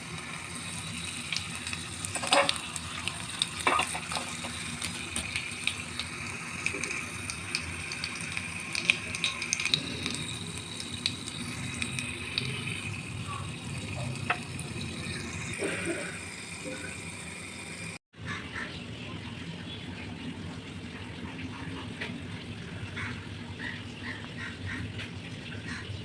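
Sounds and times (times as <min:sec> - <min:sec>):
food sizzling in a pan: 0:00.0 - 0:18.0
stirring clicks: 0:00.1 - 0:15.2.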